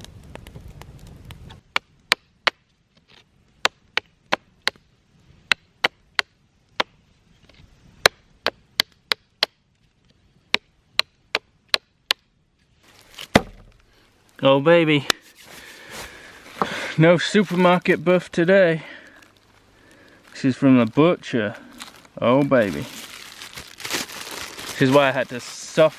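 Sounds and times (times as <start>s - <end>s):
chopping on wood: 13.3s - 13.7s.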